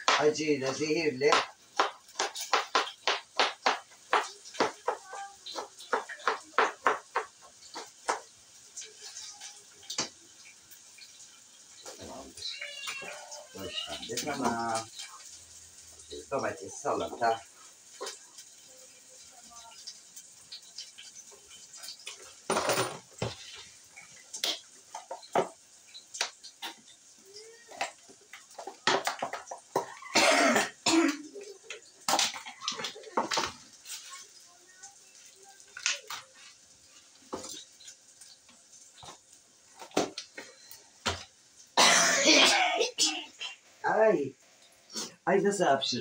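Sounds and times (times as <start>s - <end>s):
dishes and cutlery clinking: 20.5s - 34.2s.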